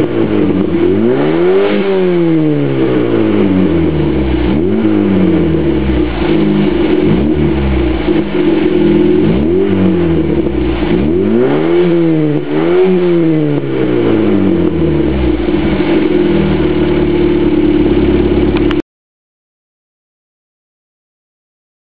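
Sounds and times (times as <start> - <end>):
car engine revving from idle: 0.0 - 18.8.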